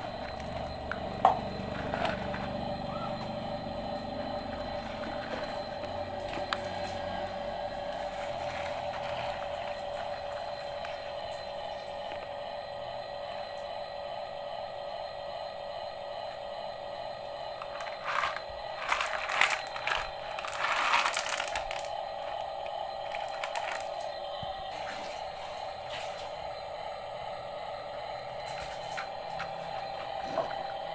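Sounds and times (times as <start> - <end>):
small electric motor whining: 0.0 - 15.2, 17.0 - 30.9
stone scraping and rattling: 17.8 - 21.9.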